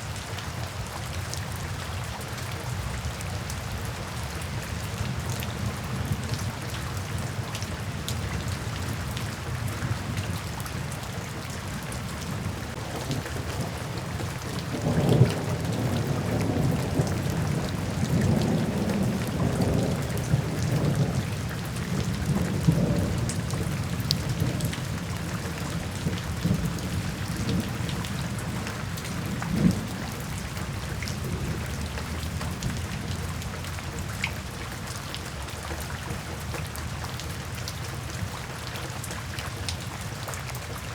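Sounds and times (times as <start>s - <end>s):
steady rain falling: 0.0s - 40.9s
rolling thunder: 11.8s - 33.4s.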